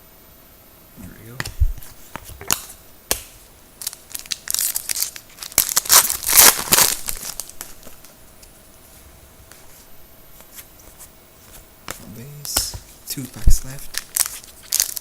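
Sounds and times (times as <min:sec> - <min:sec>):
wrapper tearing and crinkling: 0:03.8 - 0:08.1, 0:13.5 - 0:15.0.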